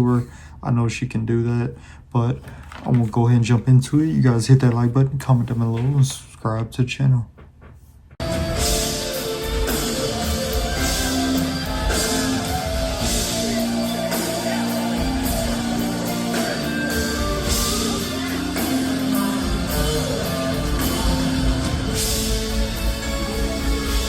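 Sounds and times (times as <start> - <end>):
bass line: 8.2 - 24.0
cymbal washes: 8.2 - 24.0
guitar: 8.2 - 24.0
held chords: 8.2 - 24.0.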